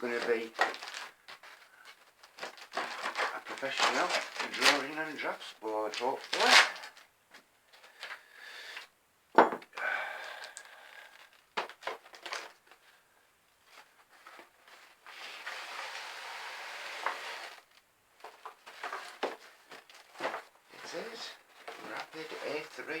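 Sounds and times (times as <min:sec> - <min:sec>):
rustling of packaging: 0:00.0 - 0:07.1, 0:10.4 - 0:13.0, 0:13.6 - 0:23.0.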